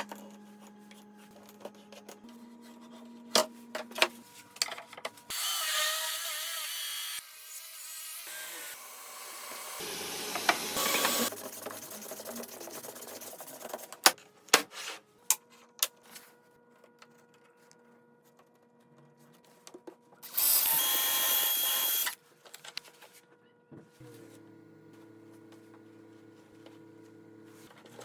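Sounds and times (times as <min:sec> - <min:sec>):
power tool running: 0:05.3 - 0:11.3, 0:20.2 - 0:22.2.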